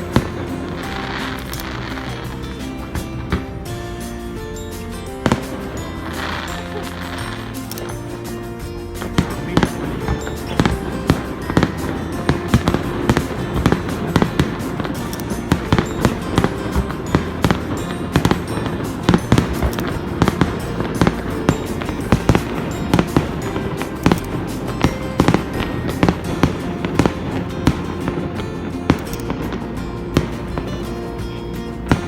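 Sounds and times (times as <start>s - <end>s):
background music: 0.0s - 32.0s
fireworks bangs: 0.0s - 32.0s.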